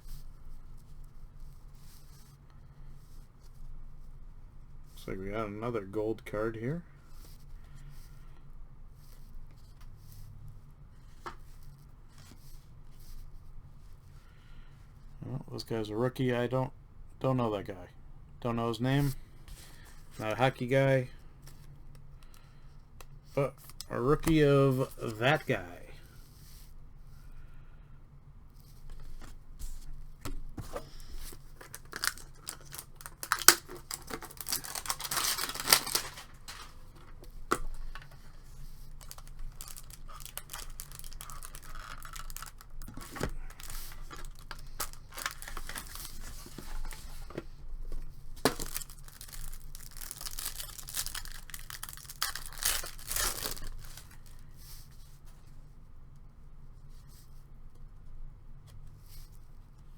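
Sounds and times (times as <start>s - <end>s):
wrappers tearing and crinkling: 23.6s - 25.8s, 30.8s - 47.2s, 48.4s - 54.4s
cards and tins clicking: 30.6s - 47.0s, 48.4s - 54.3s.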